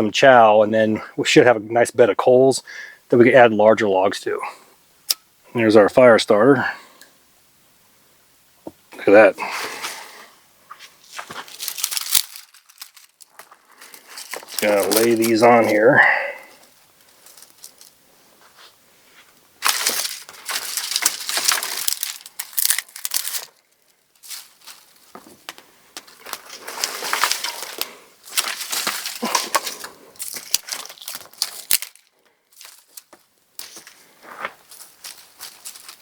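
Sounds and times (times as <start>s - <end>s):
dry twigs snapping and crunching: 11.1s - 18.0s, 19.6s - 36.0s.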